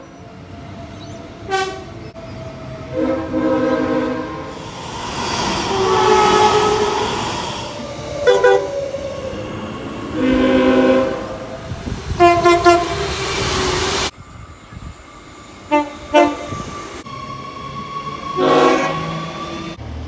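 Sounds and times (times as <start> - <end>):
train running noise: 0.0 - 20.0
locomotive air horn blasts: 1.5 - 2.0, 2.9 - 4.6, 5.6 - 7.1, 10.1 - 11.5, 12.2 - 13.1, 15.7 - 16.5, 18.4 - 19.2.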